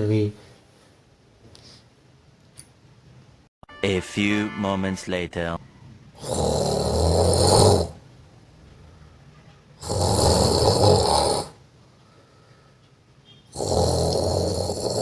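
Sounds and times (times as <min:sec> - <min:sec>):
man snoring loudly: 0:06.2 - 0:08.0, 0:09.8 - 0:11.6, 0:13.5 - 0:15.0.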